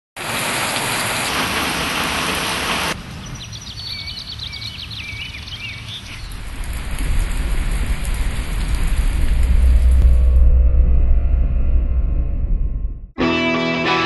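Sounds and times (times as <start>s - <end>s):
high bird chirps: 3.2s - 6.4s
low rumble: 6.2s - 13.2s.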